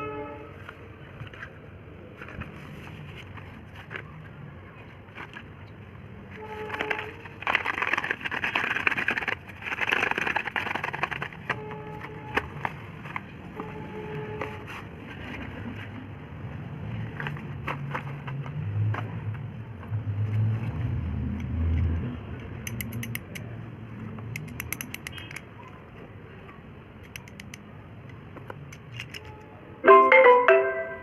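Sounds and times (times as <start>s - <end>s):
scraping and rustling: 6.3s - 13.4s
pencils knocking together: 6.6s - 11.6s.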